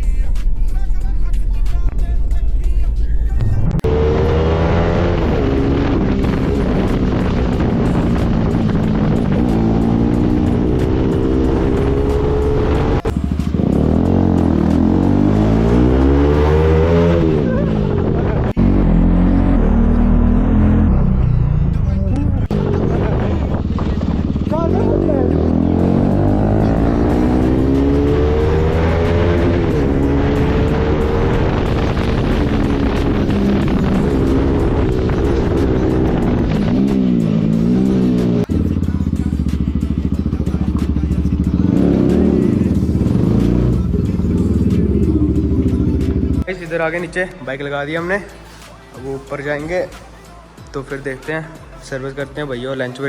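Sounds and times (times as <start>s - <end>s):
motorcycle engine accelerating: 3.5s - 46.5s
wind rush: 4.4s - 9.8s, 29.5s - 37.2s.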